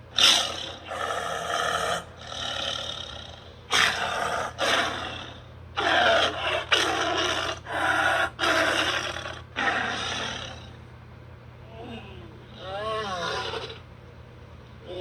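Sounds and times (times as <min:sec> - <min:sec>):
robotic creature snarls: 0:00.1 - 0:10.8, 0:12.6 - 0:13.8.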